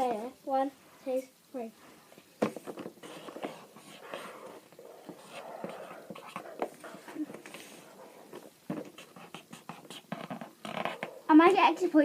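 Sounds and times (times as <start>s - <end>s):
pen scratching on paper: 2.6s - 11.2s.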